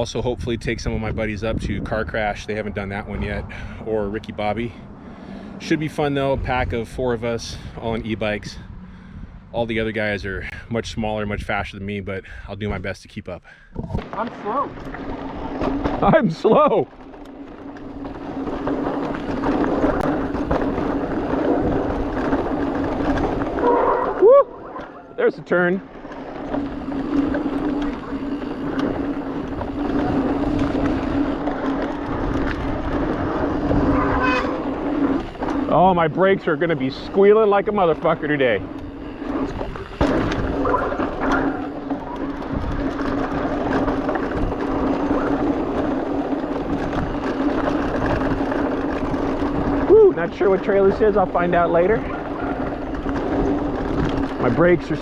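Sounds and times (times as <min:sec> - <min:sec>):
wind: 0:00.0 - 0:55.0
tyre noise on dirt: 0:13.8 - 0:55.0
bike rattling clicks: 0:13.9 - 0:25.2, 0:25.9 - 0:55.0
disc brakes howling: 0:14.4 - 0:55.0.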